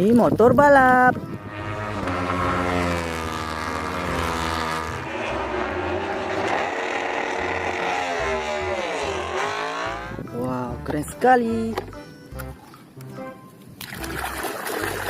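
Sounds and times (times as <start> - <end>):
motorcycle engine revving: 1.0 - 11.2.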